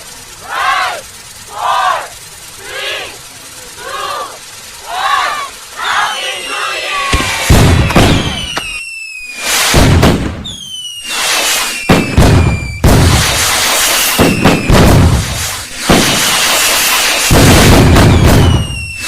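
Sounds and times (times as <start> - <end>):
falling firework whistles: 0.0 - 19.0
firework bangs with crackling tails: 7.0 - 19.0.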